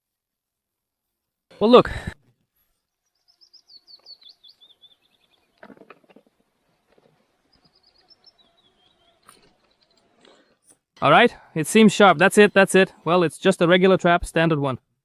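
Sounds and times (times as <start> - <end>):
small songbird singing: 2.8 - 5.6, 7.2 - 10.5.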